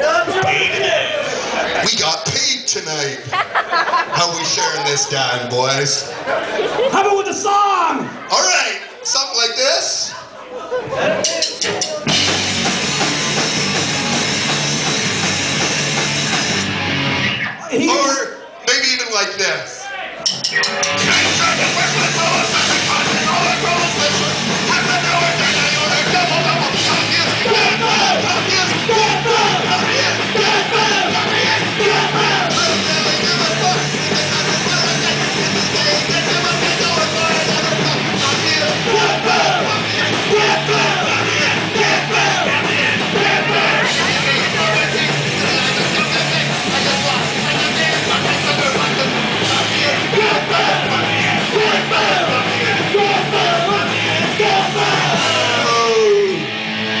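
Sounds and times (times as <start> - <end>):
punk rock band playing live: 11.2 - 17.6, 20.2 - 57.0.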